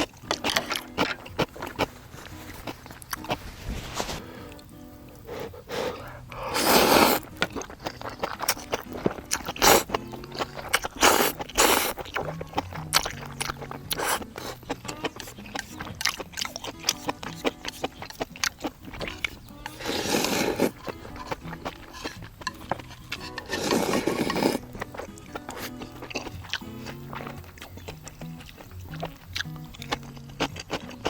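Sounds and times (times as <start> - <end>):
chewing: 0.0 - 31.0
person slurping noodles: 5.2 - 7.7, 9.5 - 9.9, 10.6 - 12.2, 13.9 - 14.6, 19.8 - 20.8, 23.4 - 24.7.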